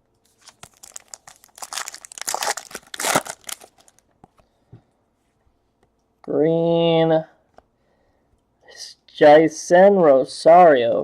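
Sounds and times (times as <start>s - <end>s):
foil wrapper crinkling and tearing: 0.3s - 4.0s.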